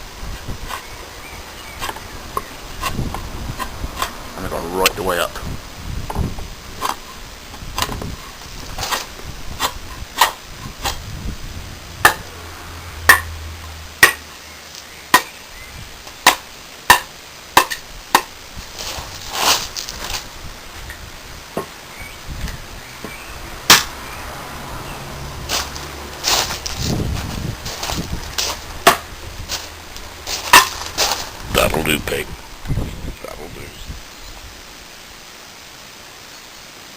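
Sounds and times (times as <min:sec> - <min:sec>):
machete chopping: 0:12.0 - 0:12.3, 0:13.0 - 0:13.4, 0:14.0 - 0:14.3, 0:15.1 - 0:15.4, 0:16.2 - 0:18.3, 0:23.7 - 0:24.0, 0:28.4 - 0:29.1, 0:30.3 - 0:31.2.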